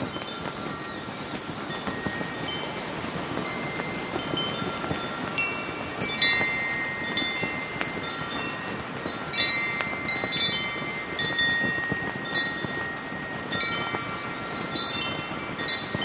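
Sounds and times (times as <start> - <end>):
brass wind chimes ringing: 0.0 - 16.0
heavy wind rushing: 0.0 - 16.0.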